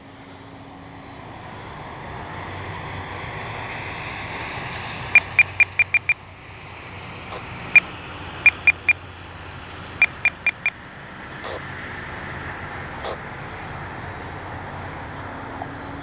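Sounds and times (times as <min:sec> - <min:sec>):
short high beeps: 0:05.0 - 0:06.2.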